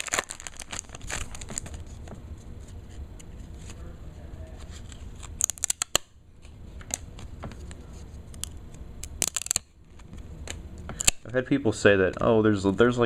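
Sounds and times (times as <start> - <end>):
card handling rustling: 0.0 - 3.8
cards crackling snaps: 4.8 - 6.1, 6.8 - 11.3.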